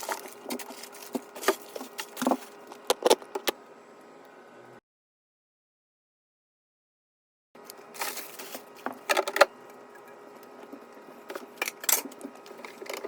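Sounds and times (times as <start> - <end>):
objects clicking and knocking: 0.0 - 3.5.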